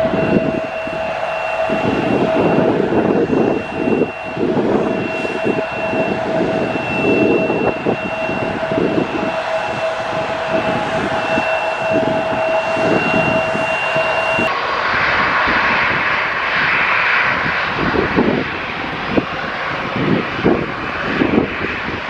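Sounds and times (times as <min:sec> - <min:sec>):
jet engines whining: 0:00.0 - 0:22.0
wind buffeting microphone: 0:00.0 - 0:22.0.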